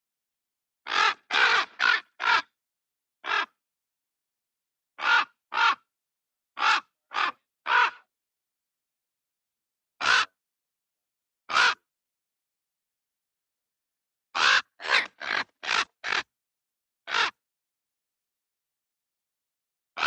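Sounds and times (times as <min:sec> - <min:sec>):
raven cawing: 0:00.8 - 0:02.6, 0:03.2 - 0:03.6, 0:05.0 - 0:05.9, 0:06.6 - 0:08.1, 0:10.0 - 0:10.4, 0:11.5 - 0:11.9, 0:14.3 - 0:16.3, 0:17.0 - 0:17.4.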